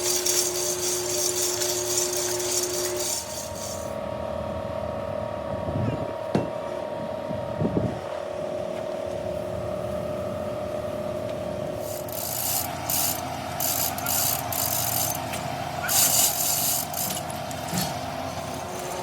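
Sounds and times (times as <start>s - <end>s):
hissing scraping bursts: 0.0s - 4.0s, 11.8s - 19.0s
mechanical hum: 0.0s - 19.0s.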